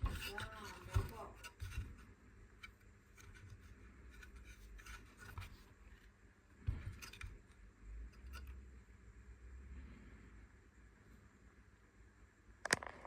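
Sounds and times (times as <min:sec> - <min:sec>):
handling clicks and scrapes: 0:00.0 - 0:06.1, 0:06.7 - 0:08.6.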